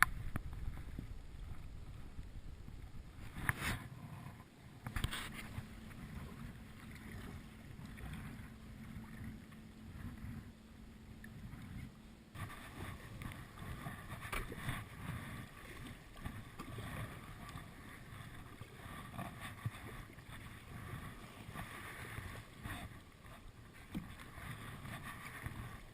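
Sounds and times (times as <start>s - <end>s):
wind on microphone: 0.0s - 10.6s
water sloshing around kayak: 0.0s - 25.9s.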